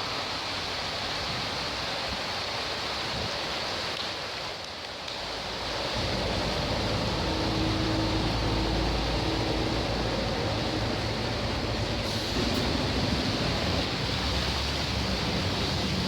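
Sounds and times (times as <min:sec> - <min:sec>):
rain and running water: 0:00.0 - 0:16.0
bus diesel engine rumble: 0:05.5 - 0:16.0.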